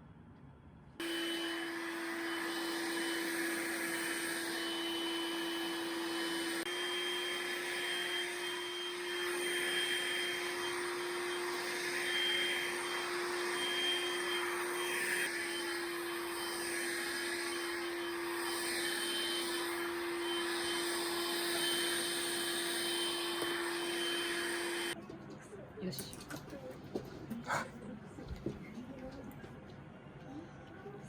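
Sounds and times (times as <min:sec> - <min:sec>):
vacuum cleaner running: 0:01.0 - 0:25.0.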